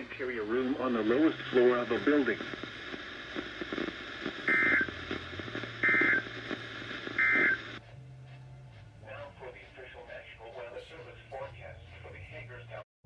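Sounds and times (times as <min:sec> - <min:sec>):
harsh buzzing data bursts: 0:00.0 - 0:07.8
radio static crackle and hiss: 0:00.0 - 0:07.8, 0:09.1 - 0:12.8.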